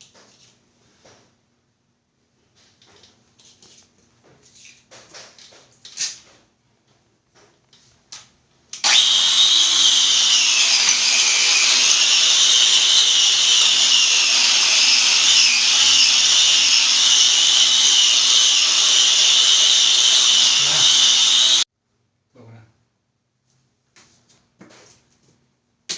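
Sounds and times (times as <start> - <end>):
electric polisher whining on marble: 8.8 - 21.6.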